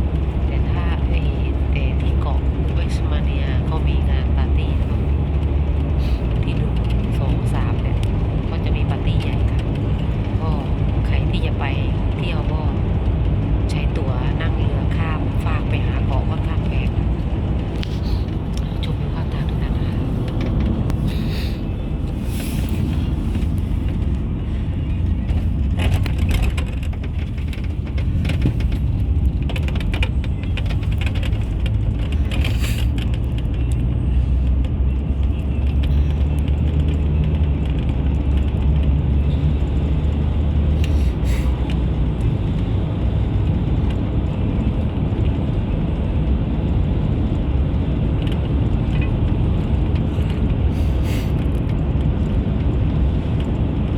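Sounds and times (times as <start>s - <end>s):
car road and engine rumble: 0.0s - 53.9s.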